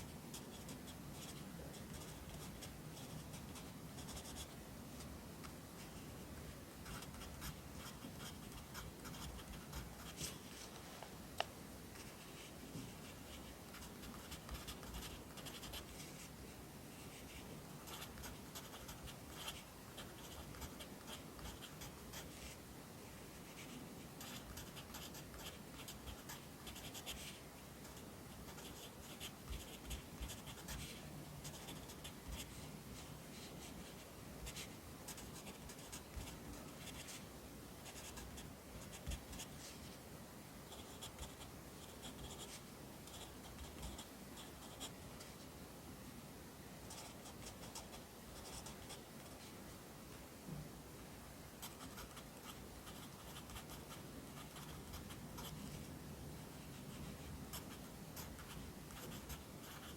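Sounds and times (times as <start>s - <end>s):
pencil scratching on paper: 6.9s - 10.5s, 12.3s - 16.3s, 17.1s - 22.6s, 23.5s - 27.4s, 28.4s - 32.5s, 57.5s - 59.9s.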